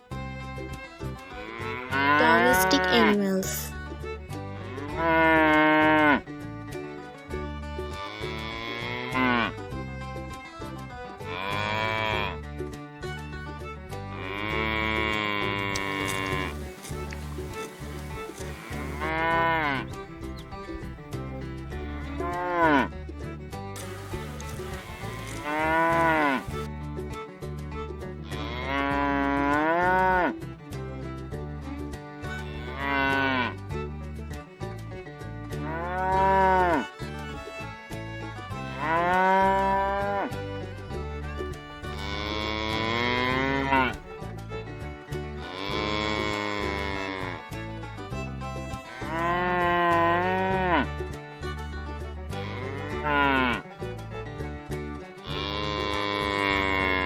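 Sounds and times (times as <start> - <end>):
cow mooing: 1.5 - 2.4, 4.7 - 6.2, 8.1 - 9.5, 14.2 - 19.8, 21.8 - 22.9, 23.8 - 26.7, 28.4 - 30.3, 32.6 - 33.5, 35.6 - 36.9, 38.8 - 40.3, 41.8 - 44.1, 45.4 - 47.4, 49.1 - 50.8, 52.4 - 53.6, 55.2 - 57.0
background music with beat: 3.6 - 57.0.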